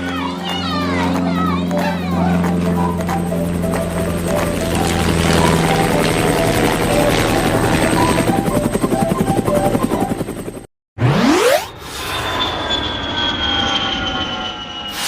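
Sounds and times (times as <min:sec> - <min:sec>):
cartoon helicopter rotor chopping: 0:00.0 - 0:15.0
light background music: 0:01.0 - 0:10.6
rising swoosh: 0:11.0 - 0:15.0.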